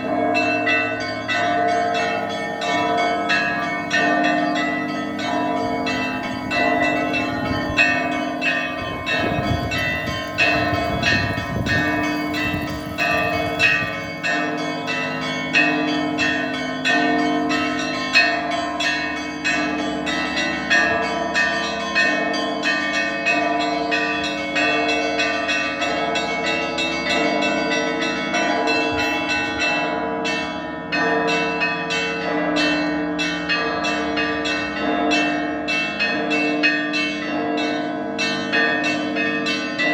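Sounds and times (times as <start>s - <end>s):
large bells ringing: 0.0s - 39.9s
small bells struck rapidly: 0.1s - 18.2s.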